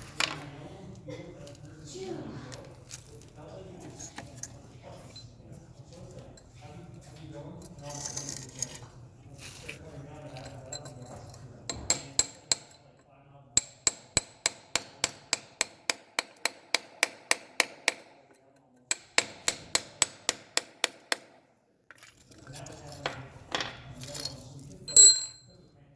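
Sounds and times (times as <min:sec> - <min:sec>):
hammer striking metal: 0:24.9 - 0:25.5.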